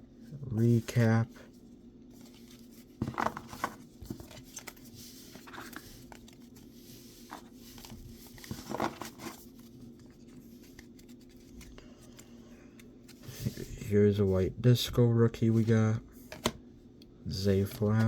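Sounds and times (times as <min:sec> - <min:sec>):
faint steady hum: 0:00.0 - 0:18.0
card wrappers rustling and crinkling: 0:00.7 - 0:13.9.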